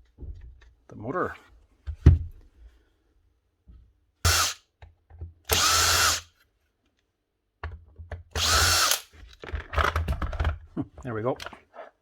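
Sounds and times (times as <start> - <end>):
cordless drill motor whirring: 4.3 - 4.6, 5.5 - 6.3, 8.4 - 9.1.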